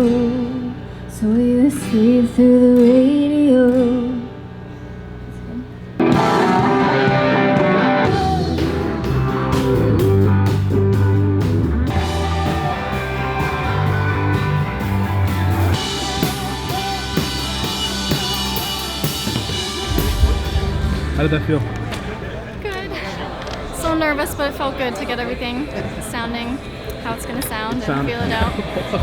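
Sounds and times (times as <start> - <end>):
drum hits: 6.0 - 22.1
country band playing: 6.0 - 22.2
cymbals: 11.9 - 21.5.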